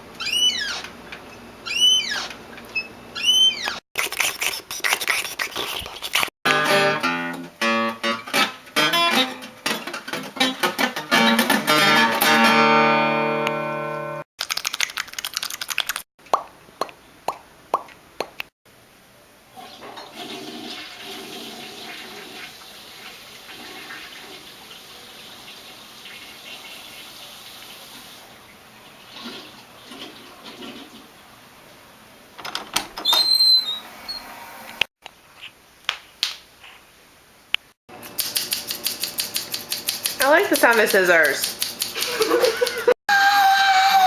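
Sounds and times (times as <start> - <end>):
toilet flushing: 19.5 - 31.2.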